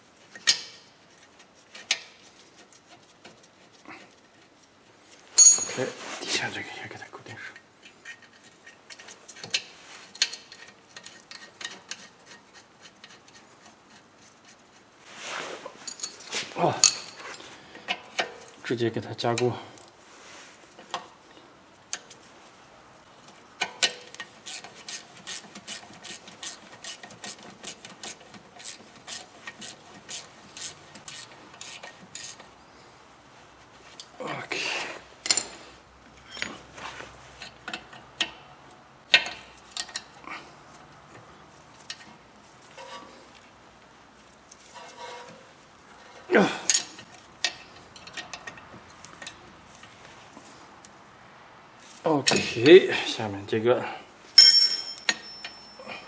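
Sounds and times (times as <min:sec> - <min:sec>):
hand tools clinking on metal: 0:05.4 - 0:05.9, 0:15.8 - 0:17.4, 0:36.2 - 0:36.6, 0:54.4 - 0:56.0.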